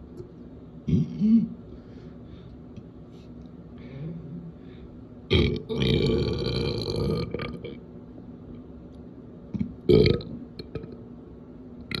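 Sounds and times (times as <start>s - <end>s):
person burping: 0.9s - 1.5s, 5.3s - 7.7s, 9.6s - 11.0s.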